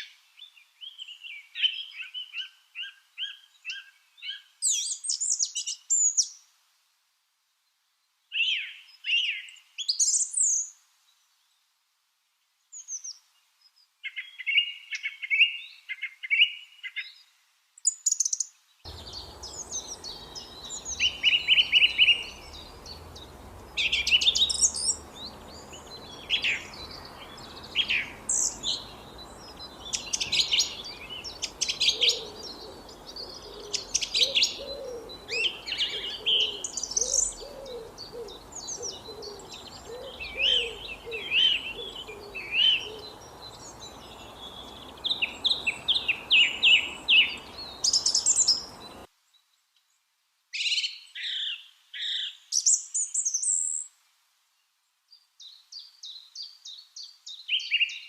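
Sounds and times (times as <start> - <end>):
background hiss: 0.0 - 58.0
lovebirds chirping and screeching: 18.9 - 49.1
lower bird call: 18.9 - 49.1.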